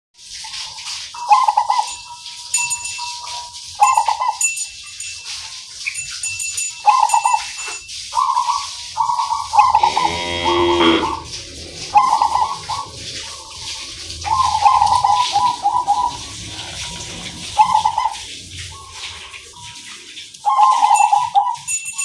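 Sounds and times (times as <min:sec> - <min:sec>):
dove cooing: 0:09.0 - 0:12.9, 0:14.2 - 0:18.3, 0:20.5 - 0:21.6.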